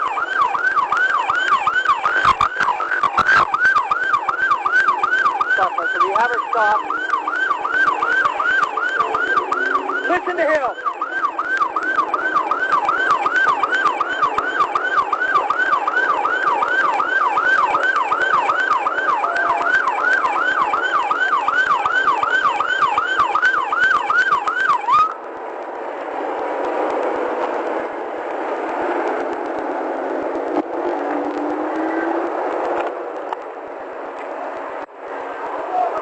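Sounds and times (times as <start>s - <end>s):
police siren yelping: 0.0s - 25.2s
vehicle rumble: 0.0s - 36.0s.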